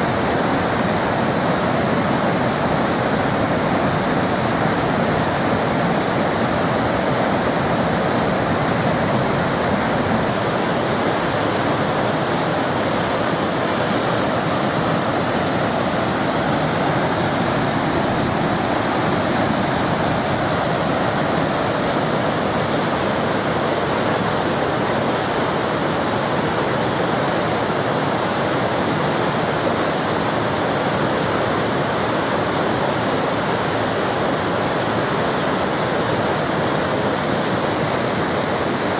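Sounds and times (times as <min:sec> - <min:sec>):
waterfall splashing into pool: 0:00.0 - 0:38.9.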